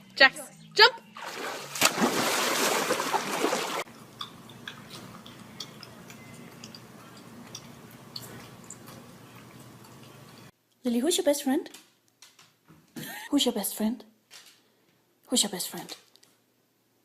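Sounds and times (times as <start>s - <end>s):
water splashing loudly: 1.2s - 3.9s
faint water drips: 3.9s - 10.5s.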